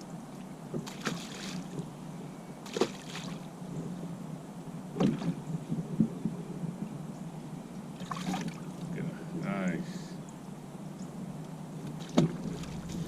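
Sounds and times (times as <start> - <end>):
steady low hum: 0.0 - 13.0
knocks and clicks on a boat: 0.7 - 1.1, 5.0 - 6.9, 11.8 - 13.0.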